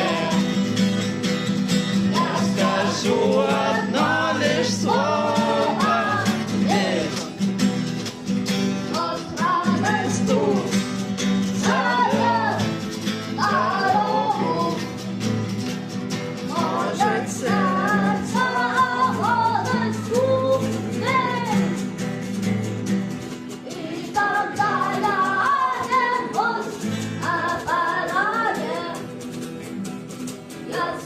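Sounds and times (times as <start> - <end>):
woman singing: 0.0 - 0.5, 2.1 - 7.3, 8.9 - 10.7, 11.6 - 12.7, 13.4 - 14.9, 16.5 - 21.7, 23.6 - 29.1, 30.7 - 31.0
guitar: 0.0 - 31.0.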